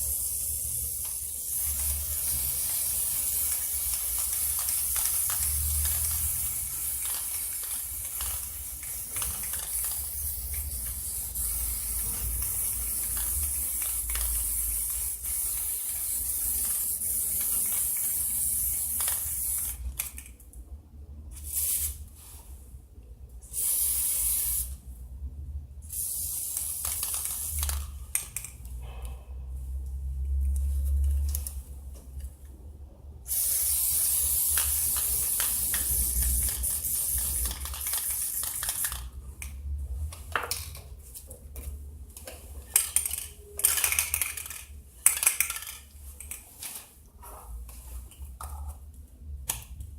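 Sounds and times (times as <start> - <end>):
spray paint hissing: 0.0 - 20.2, 21.3 - 22.5, 23.4 - 24.8, 25.8 - 28.6, 33.3 - 40.7.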